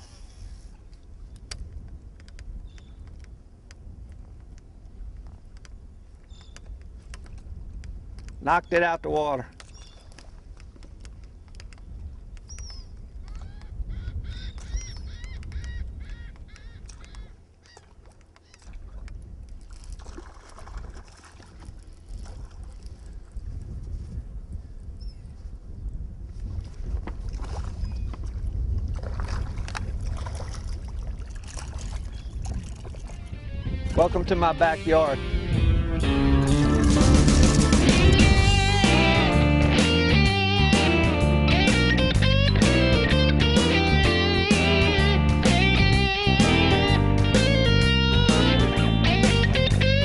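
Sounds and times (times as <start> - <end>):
wind rumbling on microphone: 0.0 - 39.3.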